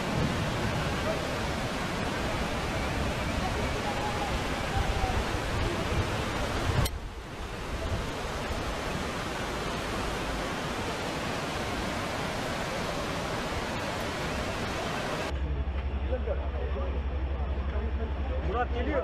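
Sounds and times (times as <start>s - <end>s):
rough sea waves: 0.0s - 15.3s
storm wind: 0.0s - 15.3s.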